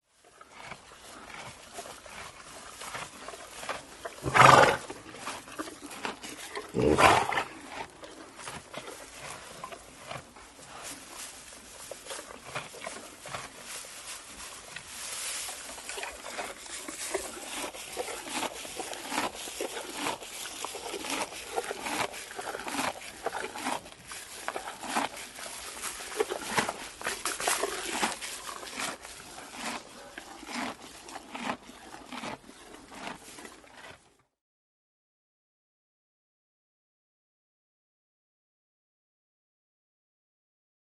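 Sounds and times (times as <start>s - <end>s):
horse chewing hay: 0.1s - 34.3s
horse breathy snorts: 0.5s - 11.0s, 15.8s - 34.0s.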